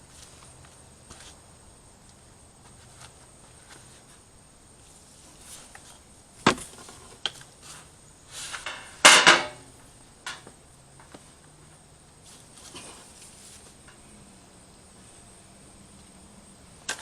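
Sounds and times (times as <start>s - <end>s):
hand tools clanking on sheet metal: 8.5s - 10.5s.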